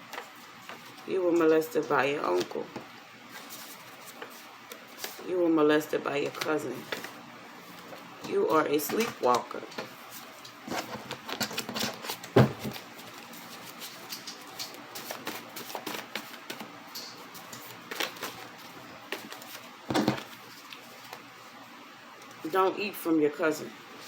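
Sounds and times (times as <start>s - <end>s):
cards being shuffled: 8.8s - 21.3s.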